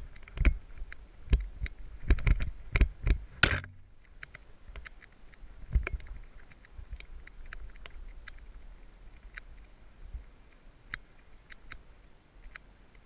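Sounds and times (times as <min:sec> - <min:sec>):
bike clicks and rattles: 0:00.0 - 0:08.6.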